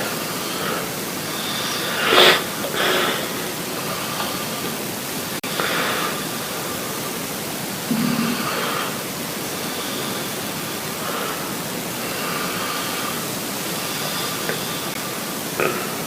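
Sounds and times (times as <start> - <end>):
person breathing in sleep: 0.0 - 4.8, 5.4 - 7.1, 7.9 - 16.0
loud steady hiss: 0.0 - 16.0
man snoring: 7.9 - 9.0, 15.6 - 16.0.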